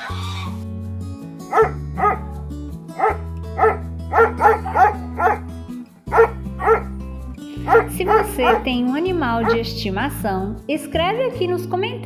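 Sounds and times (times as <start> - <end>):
background music with low notes: 0.0 - 12.0
dog barking: 1.5 - 2.4, 3.0 - 5.5, 6.1 - 7.0, 7.6 - 8.8, 9.4 - 9.6.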